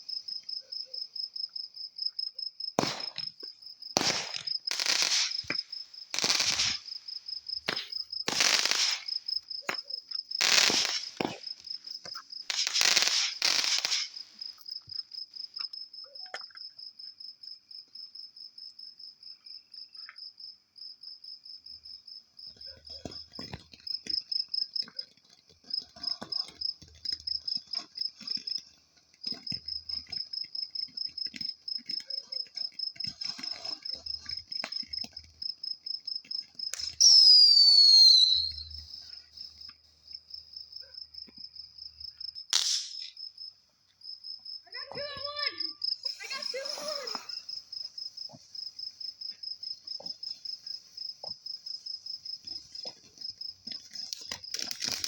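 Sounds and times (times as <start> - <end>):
crickets chirping: 0.0 - 55.0
loud falling whistle: 37.0 - 38.8.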